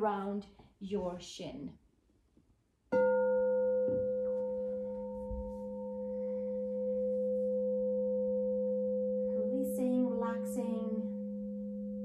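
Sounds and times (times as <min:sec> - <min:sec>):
crystal singing bowl ringing: 0:03.0 - 0:12.0.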